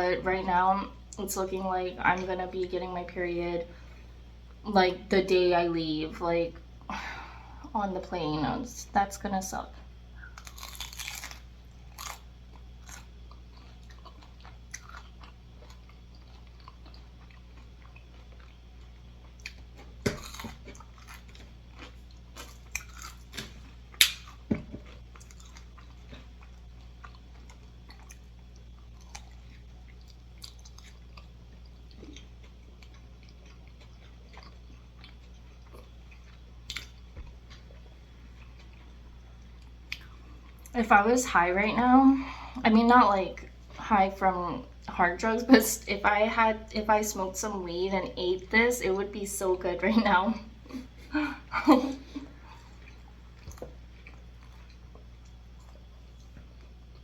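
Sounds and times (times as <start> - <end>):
steady low hum: 0.0 - 57.0
person chewing and biting food: 10.2 - 40.7, 52.4 - 57.0.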